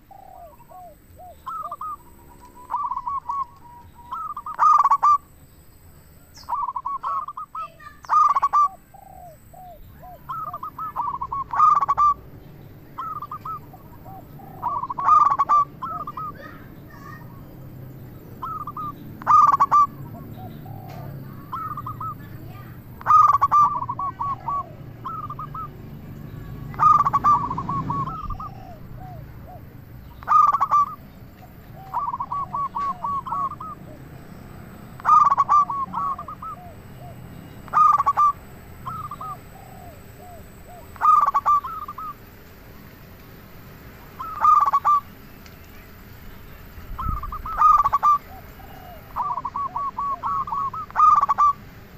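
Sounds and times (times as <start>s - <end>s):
faint low coos: 0.0s - 5.2s, 18.4s - 34.1s, 46.9s - 51.6s
dove cooing phrases: 0.0s - 5.4s, 6.1s - 42.8s, 43.5s - 45.2s, 45.8s - 51.9s.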